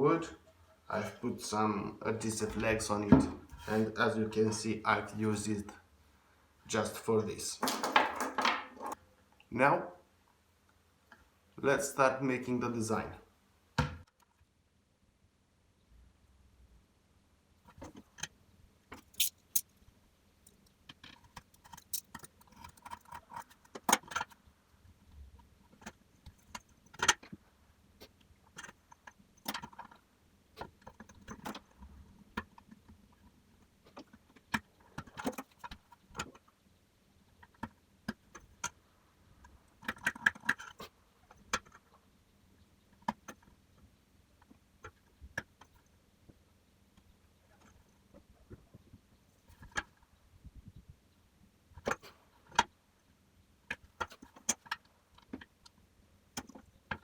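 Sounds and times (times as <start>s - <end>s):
tools clicking and tapping on bench: 18.9s - 19.6s.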